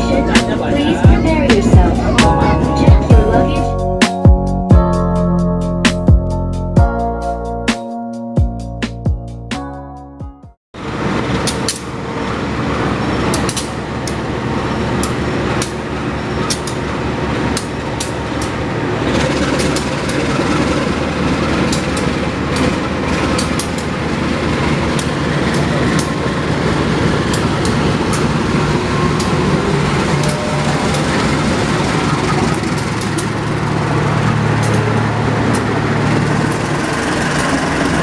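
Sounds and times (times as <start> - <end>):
train rumble and rushing: 0.0 - 5.0, 10.8 - 38.0
wheel clacks: 16.4 - 38.0.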